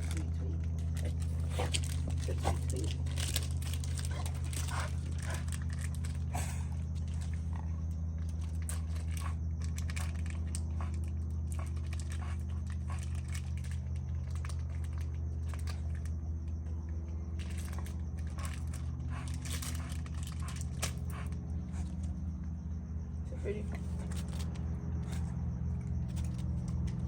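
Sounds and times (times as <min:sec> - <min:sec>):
dog chewing toy packaging: 0:00.0 - 0:16.2, 0:17.3 - 0:22.1
steady low hum: 0:00.0 - 0:27.0
packaging crinkling: 0:00.8 - 0:06.3.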